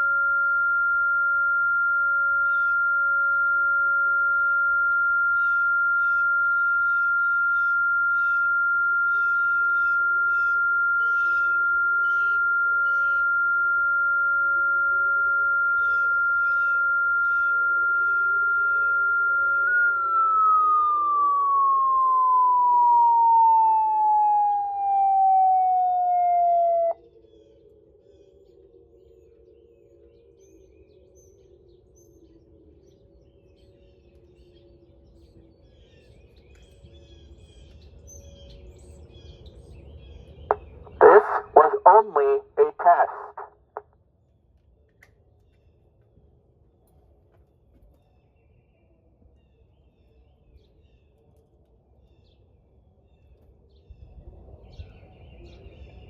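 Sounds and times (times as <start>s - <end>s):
police siren high alert tone: 0.0s - 27.0s, 40.9s - 43.5s
fainter lower siren tone: 0.0s - 27.1s
birds chirping: 39.0s - 43.5s.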